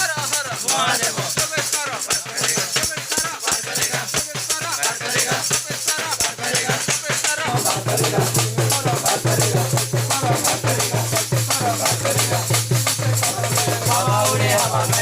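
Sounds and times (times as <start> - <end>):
shaker rattles and percussion beat: 0.0 - 15.0
person singing: 6.1 - 15.0.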